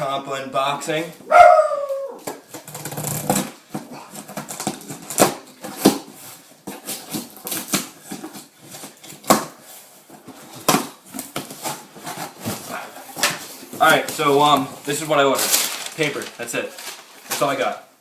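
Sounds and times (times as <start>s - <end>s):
packing paper crinkling: 11.3s - 17.8s.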